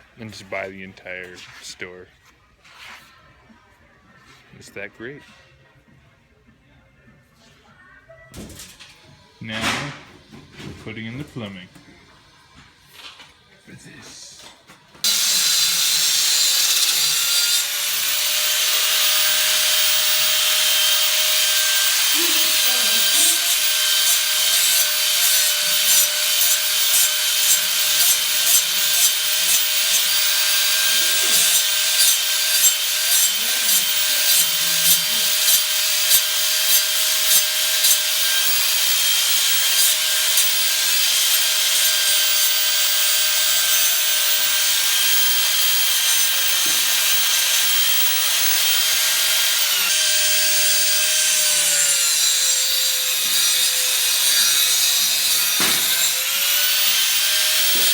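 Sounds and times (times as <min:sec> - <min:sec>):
rhythmic sawing: 0:15.0 - 0:57.9.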